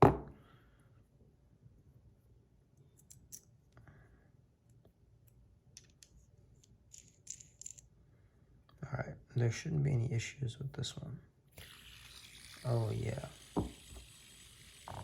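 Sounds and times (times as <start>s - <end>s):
small metal parts clicking: 5.8s - 7.9s.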